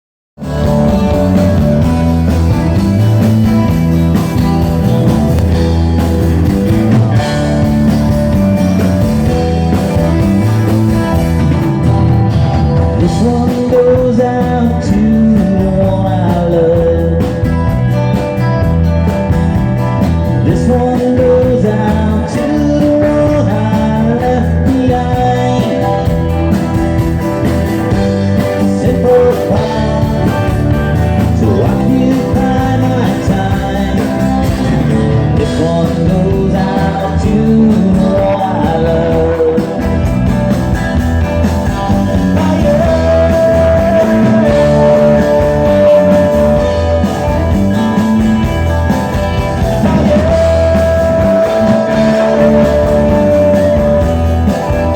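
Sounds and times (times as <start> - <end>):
live rock band playing: 0.4 - 54.9
lead vocal singing: 12.9 - 17.6, 20.4 - 26.5, 28.0 - 40.1, 42.0 - 54.9.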